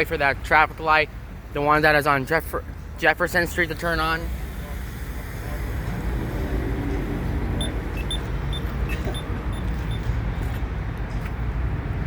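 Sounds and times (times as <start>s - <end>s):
passing traffic: 0.0s - 12.0s
crosswalk signal beeps: 7.6s - 10.2s.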